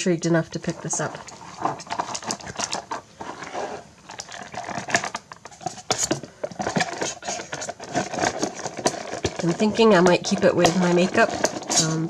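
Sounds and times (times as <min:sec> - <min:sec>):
rustling: 0:00.3 - 0:12.0.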